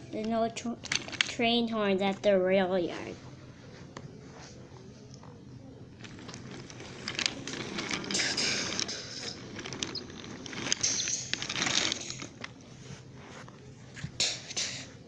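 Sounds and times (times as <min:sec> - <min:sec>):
toy train cars scraping and rolling: 0:00.2 - 0:02.3, 0:06.0 - 0:15.0.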